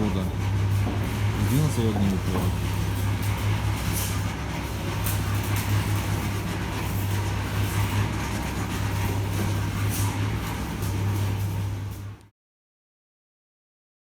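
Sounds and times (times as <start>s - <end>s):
low mechanical hum: 0.0s - 12.3s.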